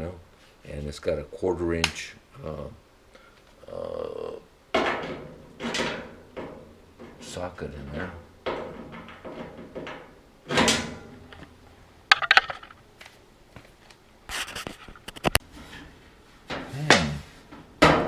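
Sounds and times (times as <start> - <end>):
handling noises: 4.8 - 16.7
tool clicks and knocks: 12.1 - 12.8.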